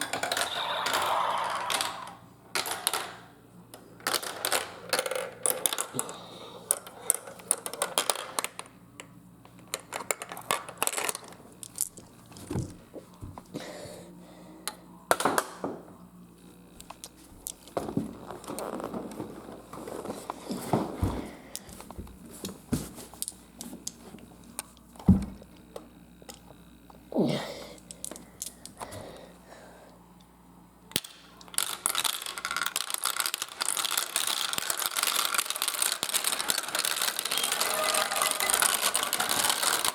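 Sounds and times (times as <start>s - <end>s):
marbles clattering on plastic run: 0.0s - 3.2s, 4.0s - 8.7s, 9.7s - 12.0s, 31.0s - 39.9s.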